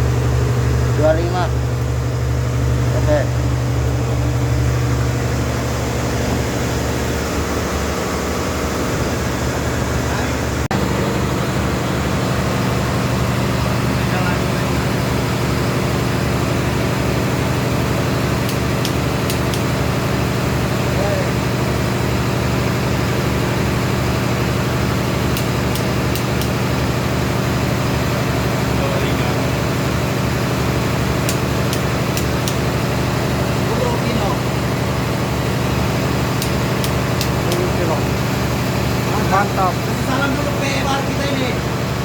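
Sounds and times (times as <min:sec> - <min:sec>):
machinery droning: 0:00.0 - 0:42.0
light clicks: 0:18.5 - 0:19.7, 0:25.4 - 0:26.6, 0:36.4 - 0:37.7.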